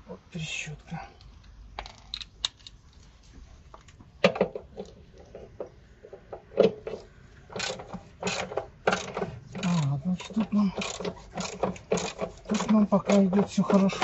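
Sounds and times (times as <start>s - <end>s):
ratchet clicks: 7.5s - 14.0s.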